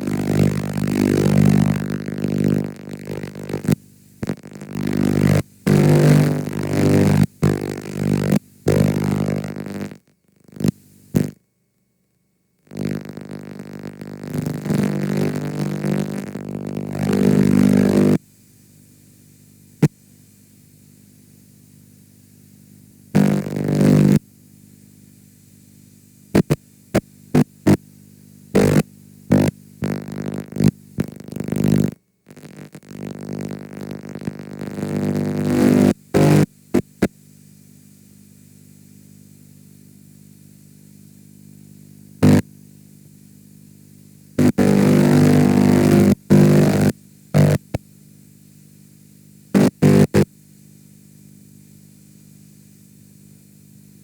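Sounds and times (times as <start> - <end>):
distorted buzzing bursts: 0.0 - 11.4, 12.7 - 18.2, 23.1 - 24.2, 28.5 - 37.1, 42.2 - 42.4, 44.4 - 47.8, 49.5 - 50.2.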